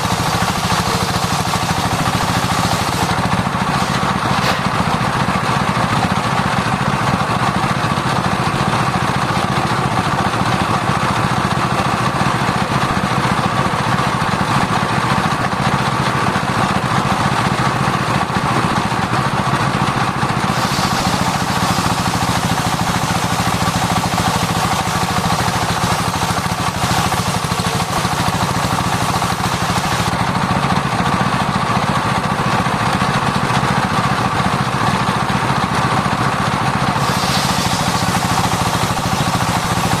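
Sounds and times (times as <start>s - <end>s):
saw blade cutting wood: 0.0s - 5.8s, 20.0s - 30.2s, 36.8s - 40.0s
sawmill machine hum: 0.0s - 40.0s.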